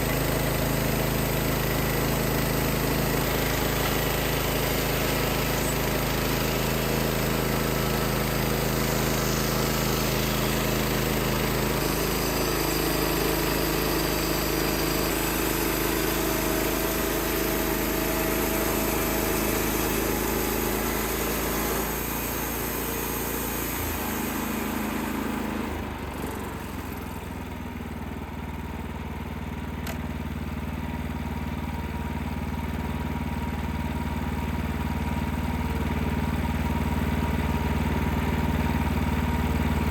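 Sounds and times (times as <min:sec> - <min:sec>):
sawmill engine running: 0:00.0 - 0:39.9
hiss of sawing: 0:03.2 - 0:25.8.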